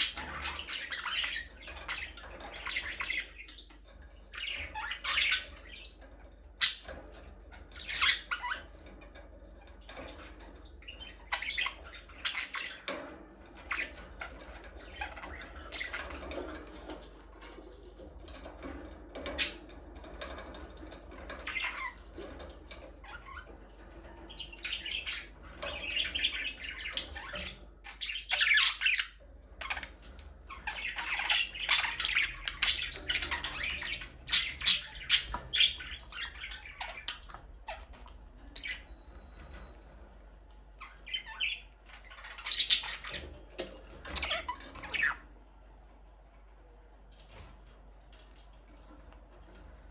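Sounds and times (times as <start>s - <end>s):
budgerigars chirping and squawking: 0.0s - 45.5s.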